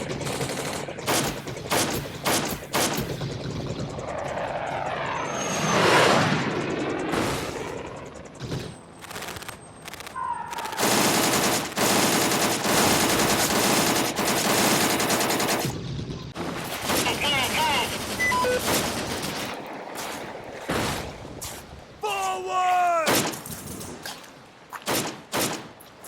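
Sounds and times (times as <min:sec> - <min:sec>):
rapid machine-gun fire: 0:00.0 - 0:04.0, 0:10.7 - 0:19.5.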